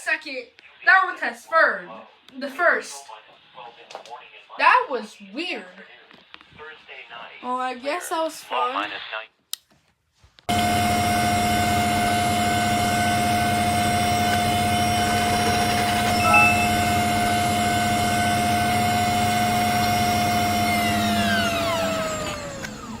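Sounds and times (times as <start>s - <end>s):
machine drone winding down: 10.5s - 23.0s.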